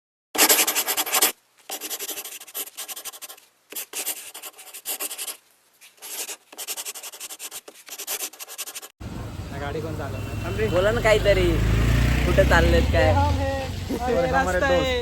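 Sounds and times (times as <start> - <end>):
scratchy rubbing noise: 0.4 - 8.9.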